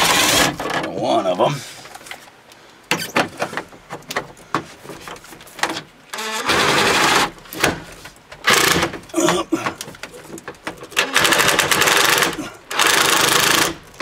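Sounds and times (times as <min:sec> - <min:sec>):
power wrench running: 0:06.2 - 0:07.3, 0:08.4 - 0:08.9, 0:11.0 - 0:14.0.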